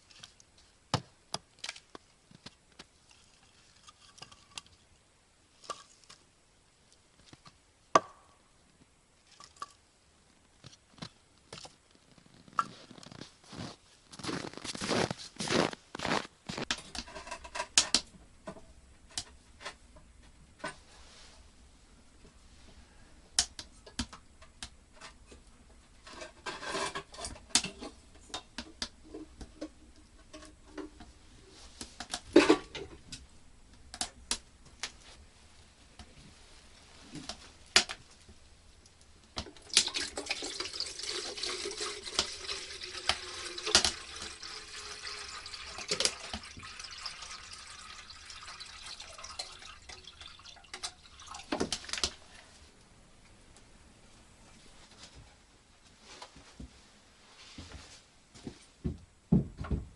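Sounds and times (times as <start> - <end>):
dishes clinking and knocking: 32.3 - 33.0
water running: 39.4 - 52.4.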